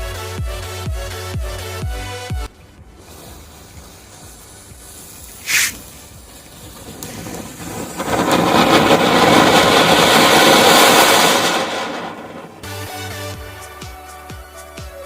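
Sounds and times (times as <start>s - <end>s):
firework gushing crackling hiss: 2.7s - 15.0s
short sharp hiss: 3.0s - 6.2s.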